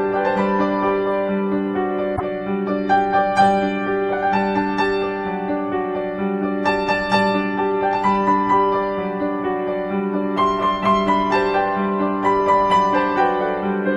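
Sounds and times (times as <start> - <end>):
slow piano piece: 0.0 - 13.9.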